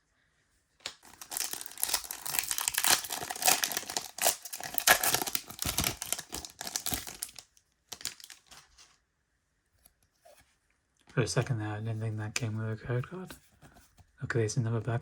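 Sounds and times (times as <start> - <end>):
foil wrapper crinkling and tearing: 0.8 - 8.9.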